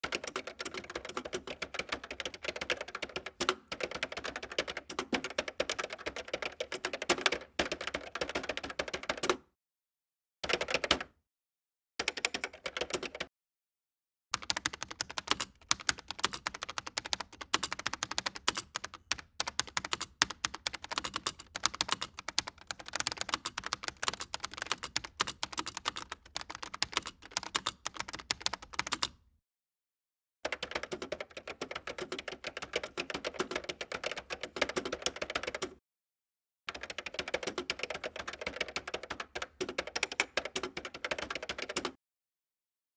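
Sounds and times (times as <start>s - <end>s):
rapid keyboard typing: 0.0s - 9.4s, 10.4s - 11.1s, 12.0s - 13.3s, 14.4s - 29.2s, 30.5s - 35.8s, 36.7s - 42.0s.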